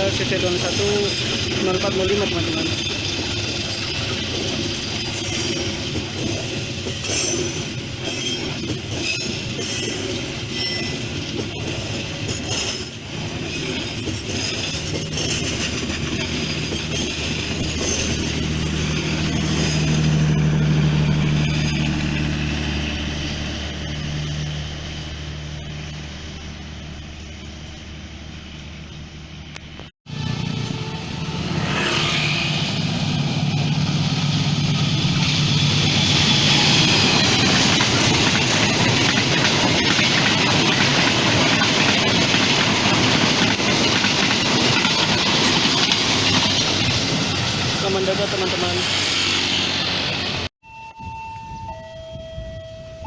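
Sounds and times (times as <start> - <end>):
train wheels rattling on rail: 0.0 - 26.0, 31.5 - 50.5.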